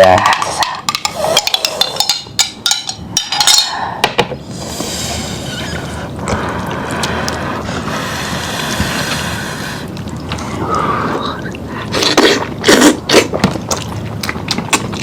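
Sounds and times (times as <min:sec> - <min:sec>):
tableware clinking: 0:00.2 - 0:04.3.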